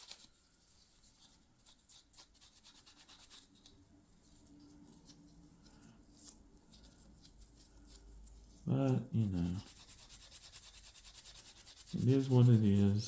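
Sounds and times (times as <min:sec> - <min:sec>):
hand sanding wood: 0:09.2 - 0:13.0.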